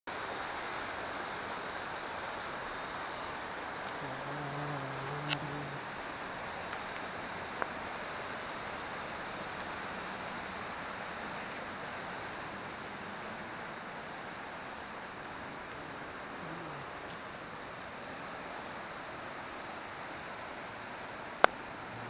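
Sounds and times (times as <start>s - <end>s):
river water rushing: 0.1s - 22.0s
faint clicks: 5.0s - 5.5s.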